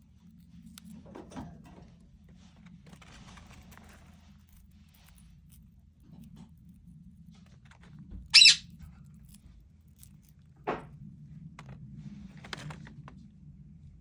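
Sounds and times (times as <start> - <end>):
parrot squawking: 8.4 - 8.6.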